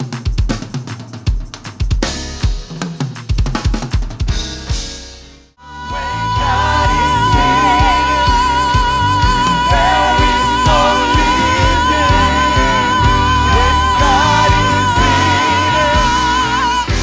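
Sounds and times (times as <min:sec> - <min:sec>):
drum kit groove: 0:00.0 - 0:17.0
gospel band music: 0:02.0 - 0:17.0
person singing: 0:05.6 - 0:17.0.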